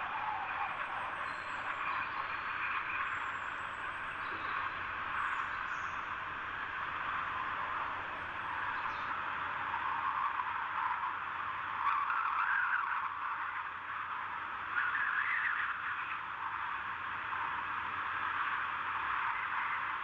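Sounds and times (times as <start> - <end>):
faint high bird calls: 0.0 - 6.2, 14.7 - 16.2.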